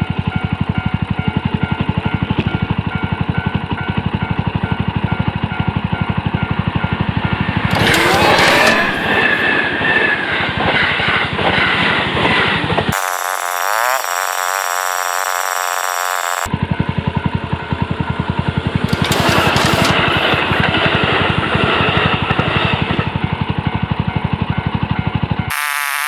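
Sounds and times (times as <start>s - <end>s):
hiss with rising whine: 13.0s - 16.5s.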